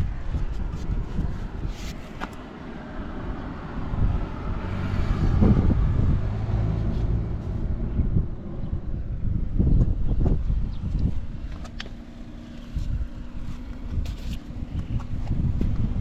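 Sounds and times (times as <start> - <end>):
atv engine running: 7.6 - 16.0.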